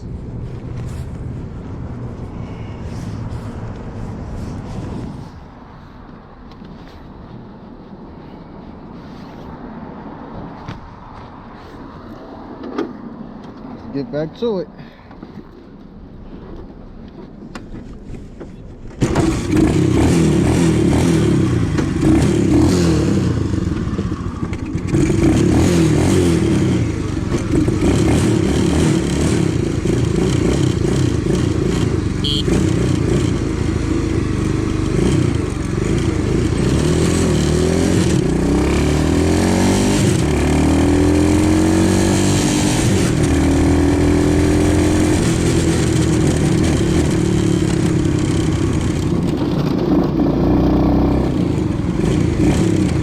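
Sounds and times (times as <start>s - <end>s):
pocket bike engine revving: 19.0s - 53.0s.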